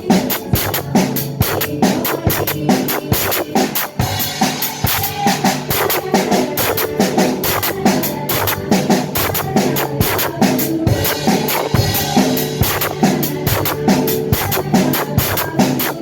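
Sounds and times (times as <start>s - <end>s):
drum kit playing a steady beat: 0.0s - 16.0s.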